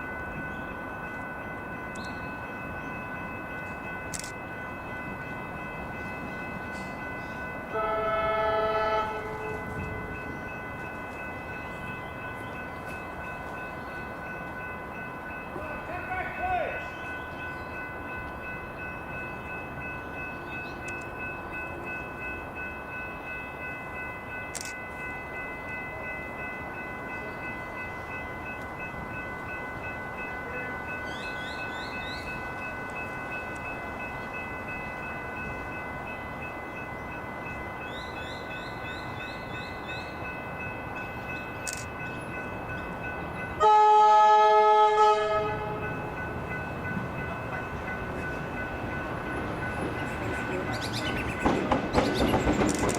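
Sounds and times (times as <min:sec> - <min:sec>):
electric train running: 0:00.0 - 0:52.9
train horn blast: 0:07.7 - 0:09.8, 0:43.6 - 0:45.8.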